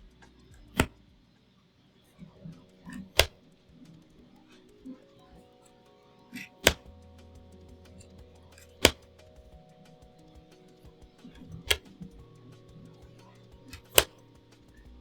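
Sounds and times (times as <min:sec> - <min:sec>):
soft background music: 0:00.0 - 0:15.0
sharp clicks: 0:02.4 - 0:05.0, 0:06.4 - 0:15.0.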